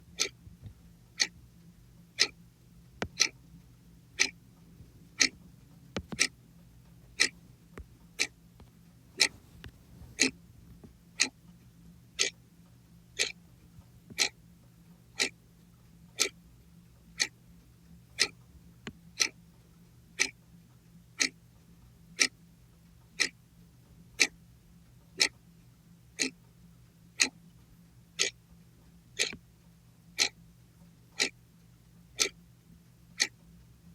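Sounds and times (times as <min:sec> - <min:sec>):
low steady hum: 0:00.0 - 0:33.9
clock ticking: 0:00.2 - 0:00.4, 0:01.1 - 0:01.4, 0:02.1 - 0:02.4, 0:03.0 - 0:03.4, 0:04.2 - 0:05.4, 0:06.0 - 0:06.4, 0:07.1 - 0:07.4, 0:08.1 - 0:08.4, 0:10.2 - 0:10.4, 0:11.2 - 0:11.4, 0:12.2 - 0:12.4, 0:13.2 - 0:13.4, 0:14.1 - 0:14.4, 0:15.2 - 0:15.4, 0:16.1 - 0:16.4, 0:17.2 - 0:17.4, 0:18.2 - 0:18.4, 0:19.2 - 0:19.4, 0:20.2 - 0:20.4, 0:21.2 - 0:21.4, 0:22.2 - 0:22.4, 0:23.1 - 0:23.4, 0:24.2 - 0:24.4, 0:26.2 - 0:26.4, 0:27.2 - 0:27.4, 0:28.2 - 0:28.4, 0:29.2 - 0:29.4, 0:30.2 - 0:30.4, 0:31.2 - 0:31.4, 0:32.2 - 0:32.4, 0:33.2 - 0:33.4.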